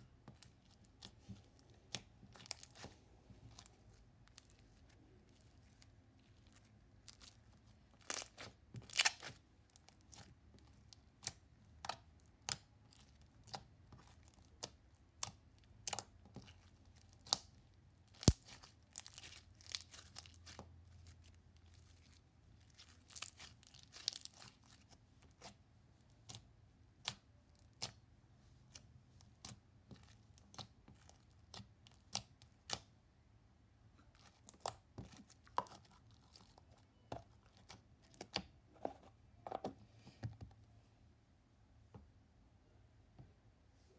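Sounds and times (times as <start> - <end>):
slime popping and crackling: 6.4 - 9.4, 18.1 - 20.6, 22.7 - 24.7.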